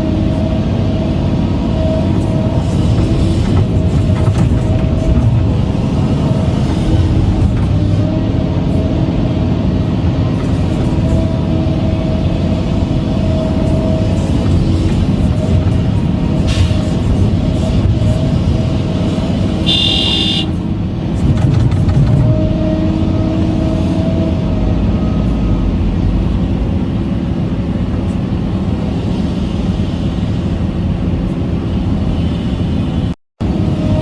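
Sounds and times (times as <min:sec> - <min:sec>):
short high-pitched horn toot: 0:19.6 - 0:20.6.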